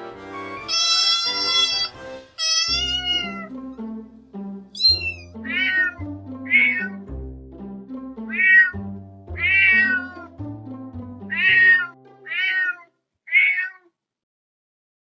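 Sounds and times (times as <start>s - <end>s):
background music with low notes: 0.0s - 12.6s
cat meowing: 0.6s - 3.5s, 4.8s - 7.0s, 8.3s - 8.8s, 9.4s - 10.3s, 11.3s - 13.9s.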